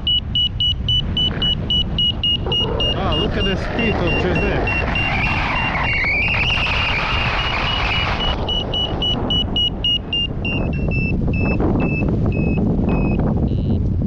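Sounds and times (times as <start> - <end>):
variometer beeping: 0.0 - 13.8
wind rushing on microphone: 0.0 - 14.0.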